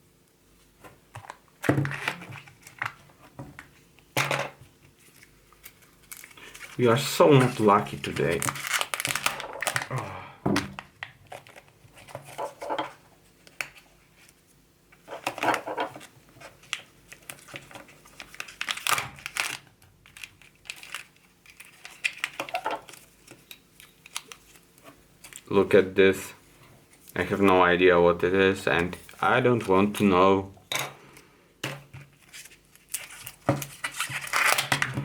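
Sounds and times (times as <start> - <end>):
packaging crinkling and tearing: 4.9 - 10.0, 10.6 - 12.7, 15.1 - 25.6, 32.1 - 35.0.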